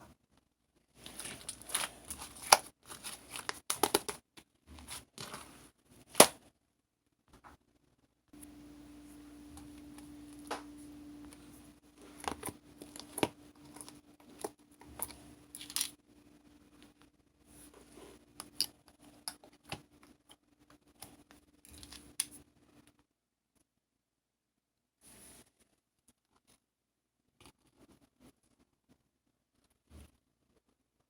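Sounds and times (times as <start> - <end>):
faint low hum: 8.3 - 22.9.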